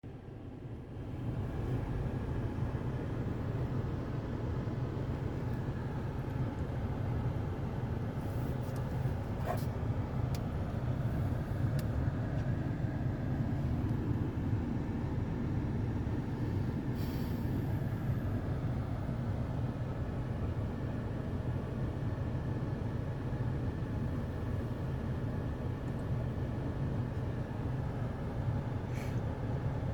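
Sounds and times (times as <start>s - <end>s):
brief hiss: 17.0s - 17.7s.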